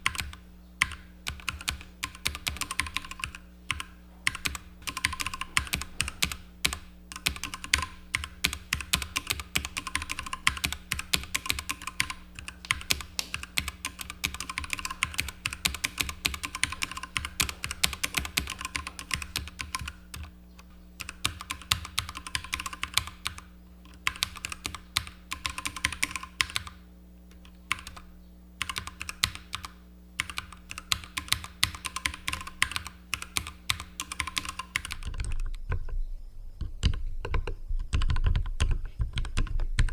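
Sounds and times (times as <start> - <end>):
typing on mechanical keyboard: 0.0 - 20.3, 21.0 - 26.8, 27.4 - 28.0, 28.6 - 35.4, 36.8 - 39.9.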